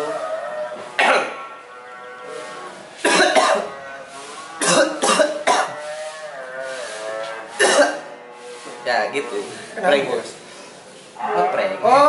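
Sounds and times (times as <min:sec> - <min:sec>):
man coughing: 0:01.0 - 0:01.4, 0:03.0 - 0:03.7, 0:04.6 - 0:05.8, 0:07.6 - 0:08.0.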